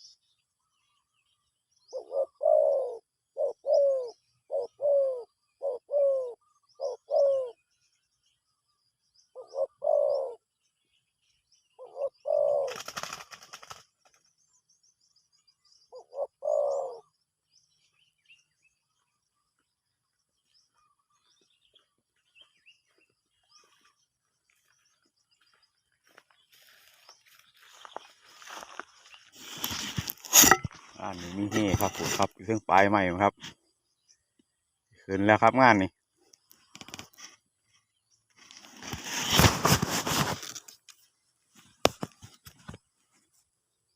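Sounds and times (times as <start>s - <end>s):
small birds chirping: 0.0s - 43.9s
dove cooing: 1.9s - 7.6s, 9.3s - 10.5s, 11.8s - 13.8s, 15.9s - 17.1s
brief rustling: 29.4s - 32.4s, 38.4s - 41.0s.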